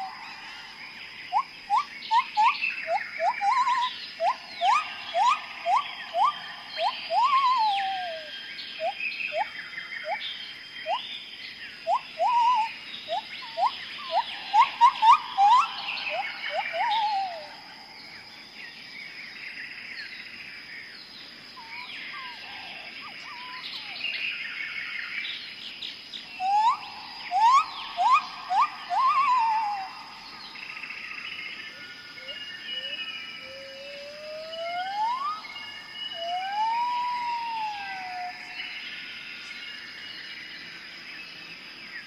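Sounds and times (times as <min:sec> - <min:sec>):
high-pitched insect drone: 0:00.0 - 0:10.2, 0:11.9 - 0:17.8, 0:26.4 - 0:30.9
chorus of birds calling: 0:00.0 - 0:18.5, 0:21.5 - 0:25.3, 0:26.1 - 0:39.6
bird whistling rising notes: 0:01.3 - 0:10.2, 0:10.8 - 0:11.0, 0:11.8 - 0:17.6, 0:26.4 - 0:30.0, 0:32.2 - 0:38.8.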